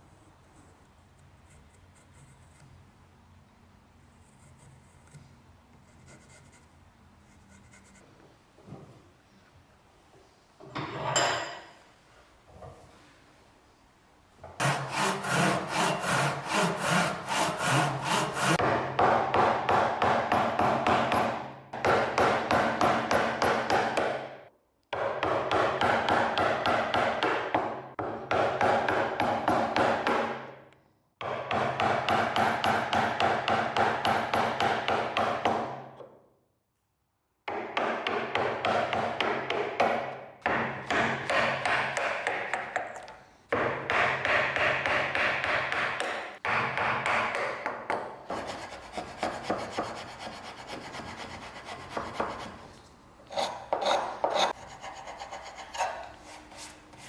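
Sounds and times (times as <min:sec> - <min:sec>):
hand tool scraping rhythmically: 0:14.6 - 0:18.6, 0:48.3 - 0:57.0.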